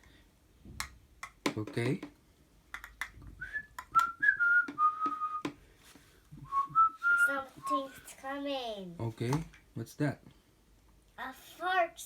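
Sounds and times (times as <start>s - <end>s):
person whistling: 3.4s - 5.5s, 6.4s - 7.9s.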